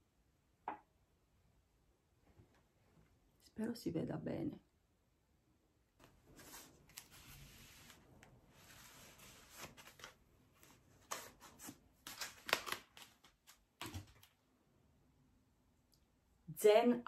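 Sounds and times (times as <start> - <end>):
wrapping rustling and crinkling: 6.0 - 14.4.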